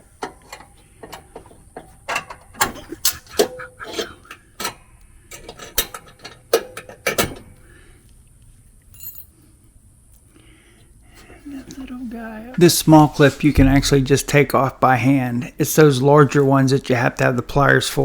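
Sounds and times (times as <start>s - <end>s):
metal clicks of hand tools: 0.2s - 7.4s.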